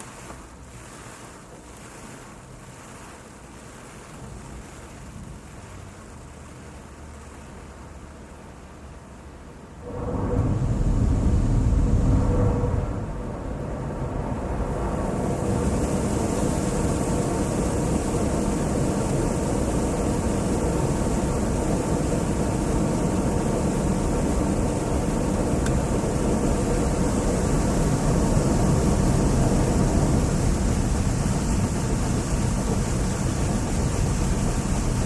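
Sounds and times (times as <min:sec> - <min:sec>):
car wash machinery rumble: 0:00.0 - 0:35.0
rushing hiss of spray: 0:15.0 - 0:35.0.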